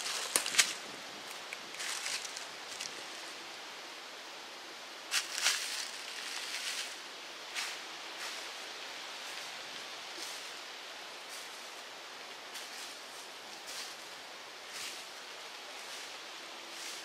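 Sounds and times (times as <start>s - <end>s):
footsteps through dry leaves: 0.0s - 3.4s, 5.1s - 17.0s
background hiss: 0.0s - 17.0s.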